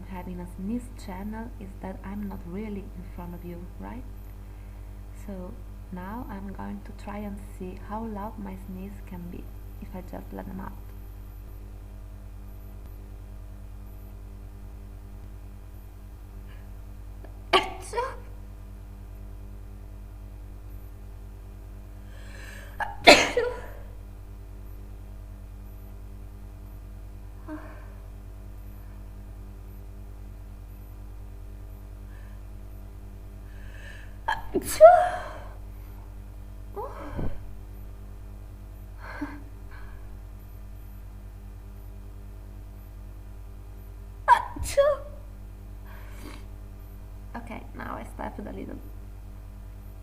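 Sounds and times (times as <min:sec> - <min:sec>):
woman sneezing: 0:17.6 - 0:18.3, 0:22.7 - 0:23.9, 0:34.3 - 0:35.6, 0:44.3 - 0:45.2.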